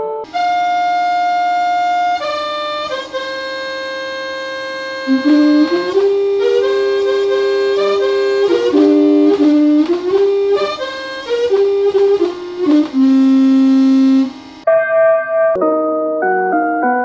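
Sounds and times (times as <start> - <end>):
piano-like chime: 14.6 - 17.0.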